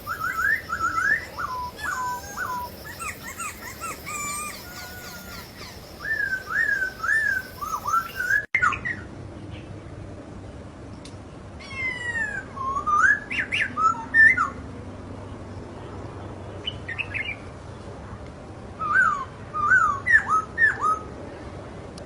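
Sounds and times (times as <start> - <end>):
bird whistling song: 0.0 - 8.5.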